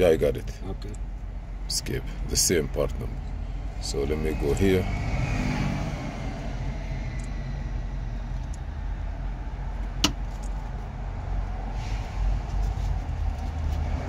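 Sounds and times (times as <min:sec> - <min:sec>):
low vehicle rumble: 0:00.0 - 0:14.0
sharp click: 0:10.0 - 0:10.6.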